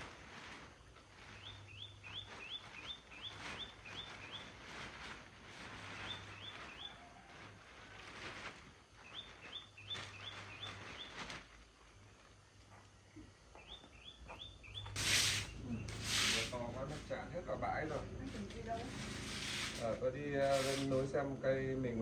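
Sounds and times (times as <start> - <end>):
outdoor background noise: 0.0 - 22.0
loud brief hissing: 15.0 - 16.6.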